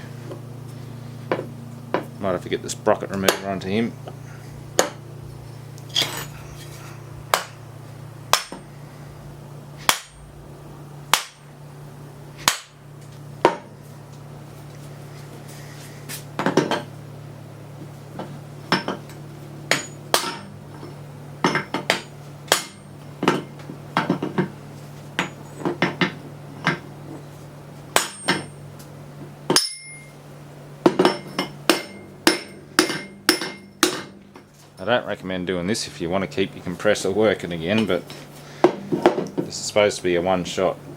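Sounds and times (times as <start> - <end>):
steady low hum: 0.0 - 40.9
hammer striking metal shaft: 7.3 - 7.6, 8.3 - 8.7, 9.8 - 10.3, 11.1 - 11.5, 19.7 - 24.5, 27.9 - 28.6, 29.5 - 30.1, 30.8 - 34.2.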